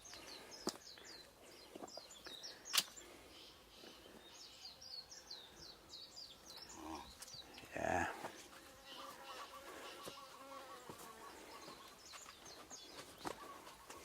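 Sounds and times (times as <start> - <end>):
small birds chirping: 0.0 - 14.0.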